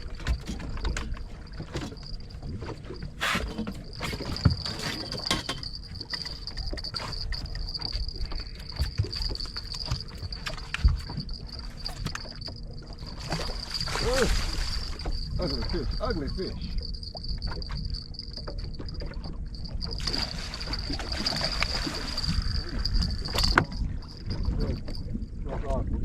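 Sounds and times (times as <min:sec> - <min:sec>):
steady high-pitched whine: 0:00.0 - 0:25.4.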